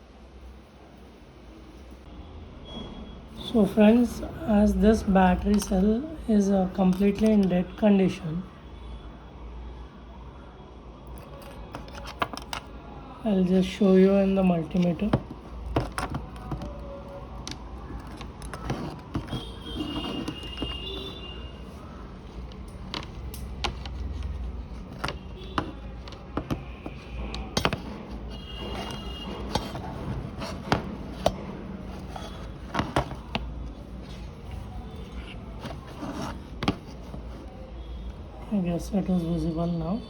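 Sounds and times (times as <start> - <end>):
small clicks and taps of handling: 11.1 - 12.7, 22.2 - 37.6.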